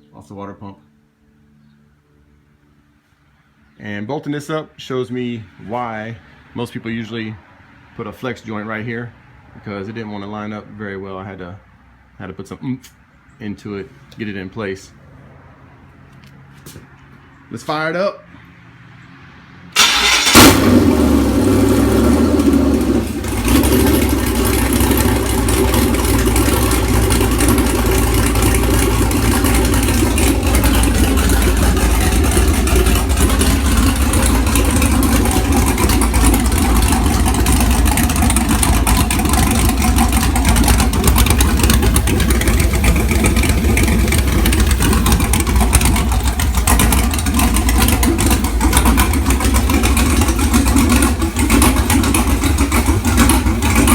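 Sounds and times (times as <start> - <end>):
engine starting and idling: 19.8 - 53.9.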